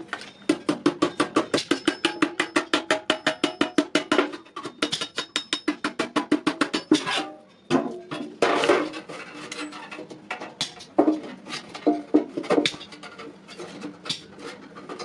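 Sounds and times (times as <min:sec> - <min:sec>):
hammer striking iron: 0:00.4 - 0:07.2.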